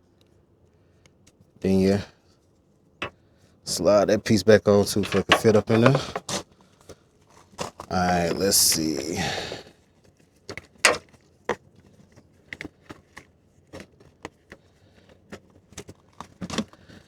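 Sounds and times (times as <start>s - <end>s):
bulb parts clicking: 4.9s - 6.2s.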